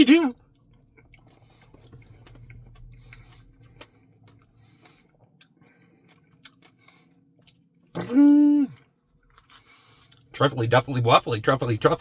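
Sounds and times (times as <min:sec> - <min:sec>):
low hum: 0:00.3 - 0:10.4.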